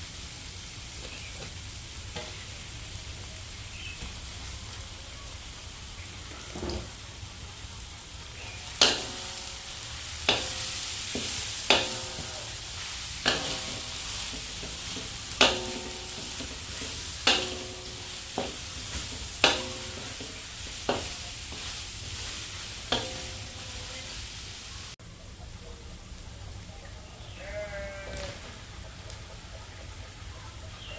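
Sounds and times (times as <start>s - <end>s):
food sizzling in a hot pan: 0.0s - 25.0s
metal spatula knocking on pan: 8.8s - 9.5s, 10.3s - 12.6s, 13.2s - 21.7s, 22.9s - 23.7s.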